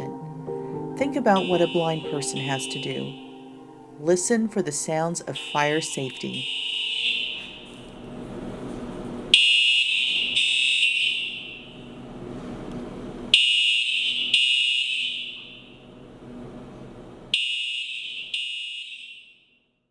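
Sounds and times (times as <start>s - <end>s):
fire alarm shrill tone: 1.0s - 8.2s, 9.3s - 11.8s, 13.4s - 15.8s, 17.4s - 19.5s.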